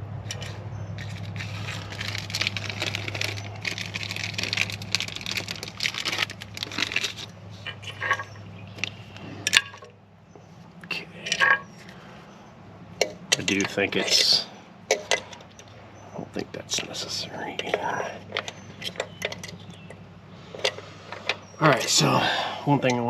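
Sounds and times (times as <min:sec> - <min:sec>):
plastic packaging crinkling: 0:00.3 - 0:07.3.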